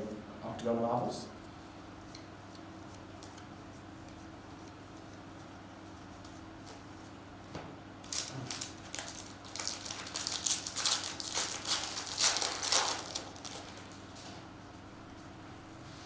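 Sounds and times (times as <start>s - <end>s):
wrapper tearing and crinkling: 8.0s - 14.0s.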